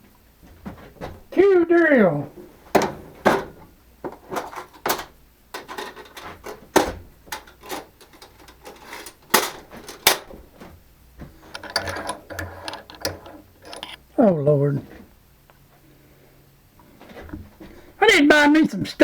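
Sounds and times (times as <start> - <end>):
metal tools clicking and clunking: 2.7 - 14.1.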